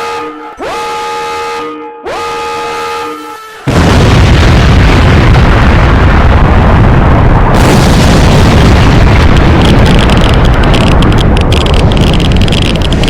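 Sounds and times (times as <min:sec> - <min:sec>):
explosion blast rumble: 0:03.6 - 0:13.0.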